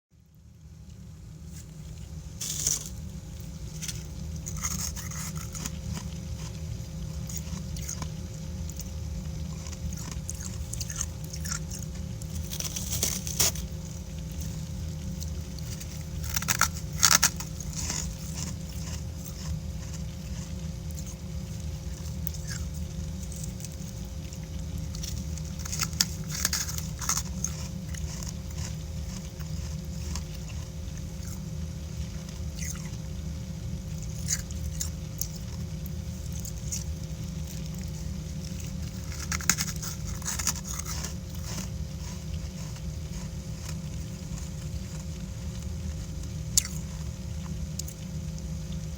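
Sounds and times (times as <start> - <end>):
steady low hum: 0.1 - 48.9
frost chunks crunching: 0.8 - 48.9.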